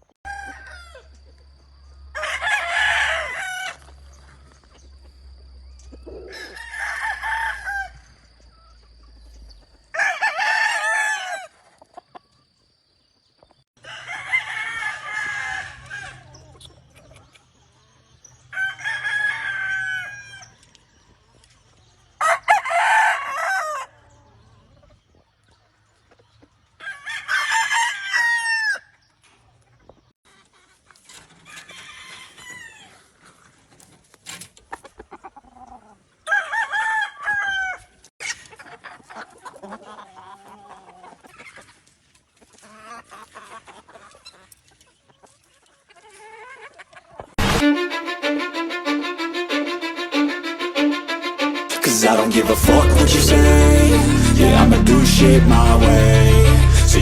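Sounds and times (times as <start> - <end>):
roosters crowing: 0.2 - 4.7, 6.0 - 8.7, 9.7 - 11.6, 13.8 - 16.7, 18.4 - 20.6, 22.2 - 24.4, 26.8 - 28.9, 31.4 - 33.0, 36.2 - 37.9.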